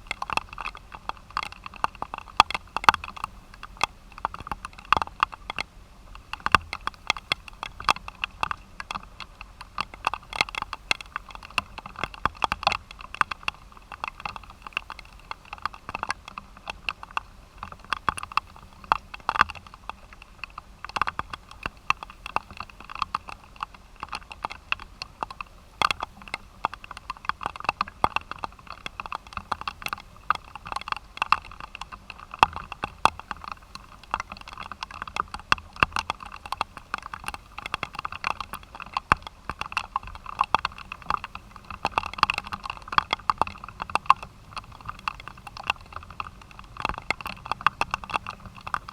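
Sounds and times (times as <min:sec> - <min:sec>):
rain pattering: 0:00.0 - 0:48.9.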